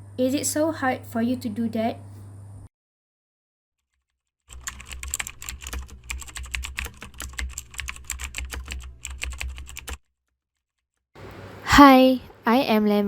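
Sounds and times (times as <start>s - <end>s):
low steady hum: 0.0s - 2.7s
keyboard typing: 4.5s - 10.0s.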